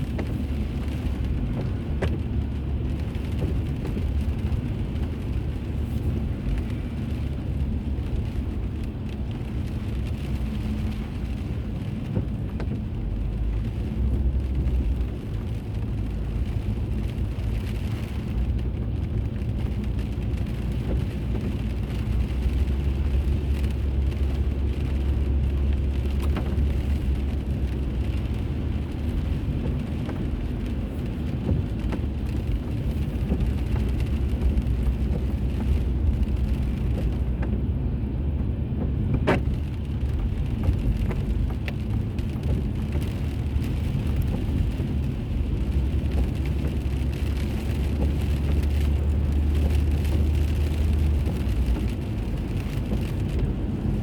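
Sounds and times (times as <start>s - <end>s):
car road and engine rumble: 0.0s - 54.0s.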